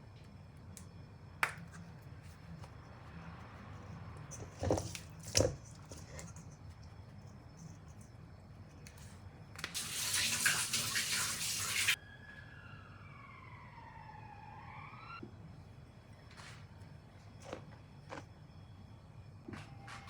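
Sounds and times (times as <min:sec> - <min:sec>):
tap water running into sink: 0:09.7 - 0:12.0.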